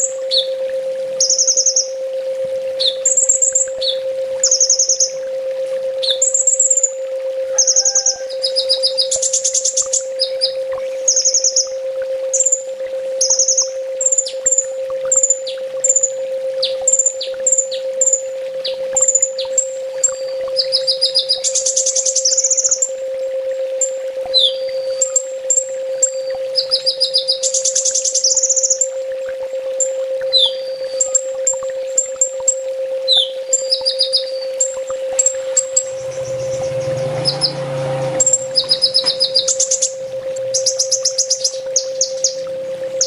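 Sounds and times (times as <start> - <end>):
bird singing high trills: 0.0 - 0.6, 1.2 - 2.0, 2.8 - 5.2, 6.0 - 23.0, 23.8 - 28.9, 29.8 - 43.0
steady low hum: 0.0 - 43.0.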